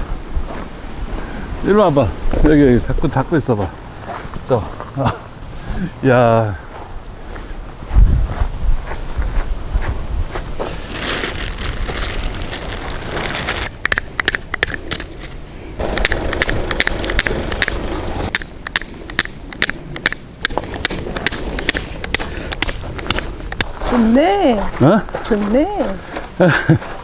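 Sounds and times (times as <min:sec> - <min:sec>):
gusty wind on microphone: 0:06.8 - 0:24.5
tarp flapping and snapping: 0:10.6 - 0:13.8.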